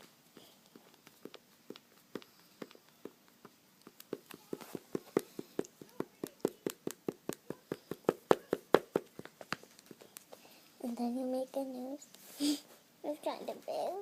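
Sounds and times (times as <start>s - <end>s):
pen tapping on paper: 0.4s - 10.1s.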